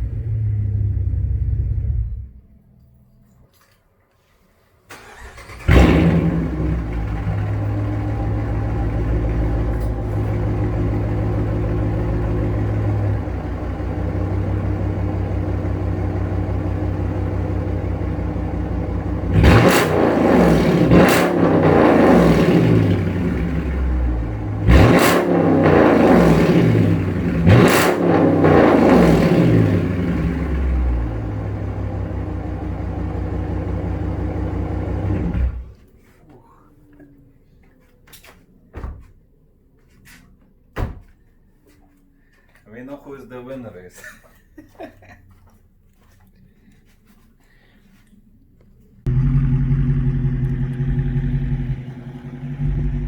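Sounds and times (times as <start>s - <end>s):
car engine idling and revving: 0.0s - 2.4s, 5.0s - 35.8s, 49.1s - 53.0s.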